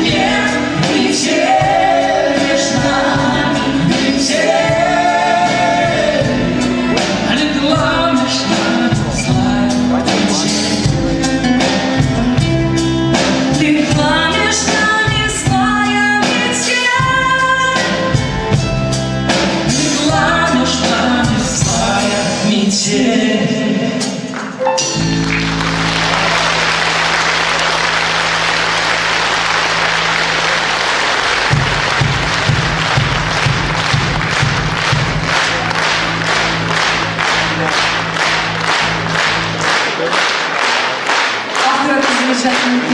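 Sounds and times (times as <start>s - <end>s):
group vocals singing: 0.0s - 10.2s, 19.6s - 24.2s
live pop-rock band: 0.0s - 42.9s
audience applause: 25.1s - 42.9s.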